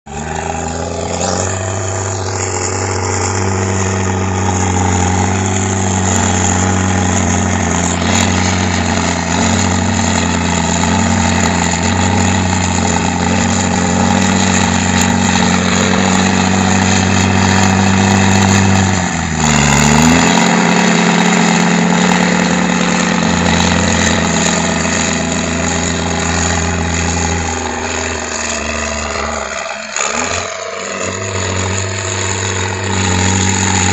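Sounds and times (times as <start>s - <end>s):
diesel engine running: 0.1s - 33.9s.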